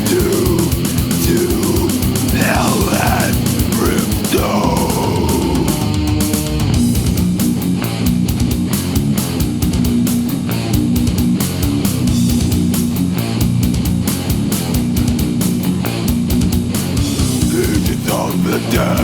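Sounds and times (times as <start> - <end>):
distorted guitar riff: 0.0 - 19.0
fast dense drumming: 0.0 - 19.0.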